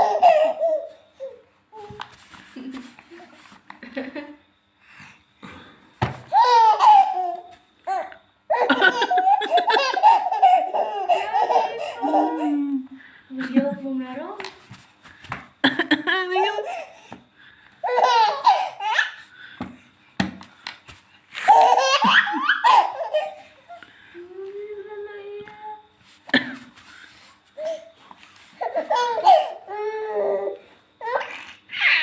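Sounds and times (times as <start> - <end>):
baby belly laughing: 6.3 - 7.3, 8.5 - 12.5, 17.8 - 19.1, 21.5 - 23.4.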